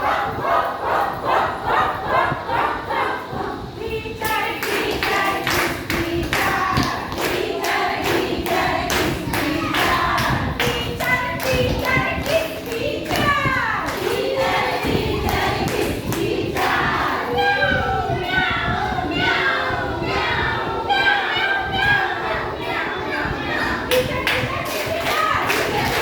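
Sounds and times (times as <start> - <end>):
group of voices chanting: 0.0 - 26.0
rhythmic thumps and claps: 4.2 - 17.3, 23.7 - 26.0.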